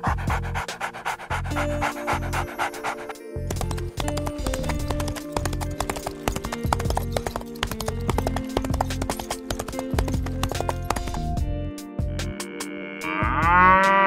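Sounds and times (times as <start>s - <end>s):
horse hooves clip-clopping: 1.3s - 11.4s
music with pulsing bass: 13.2s - 14.0s.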